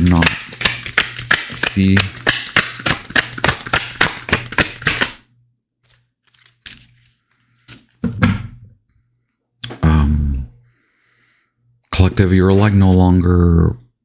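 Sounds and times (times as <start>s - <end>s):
card taps: 0.0s - 5.2s
cards being shuffled: 0.0s - 5.2s, 5.8s - 8.0s.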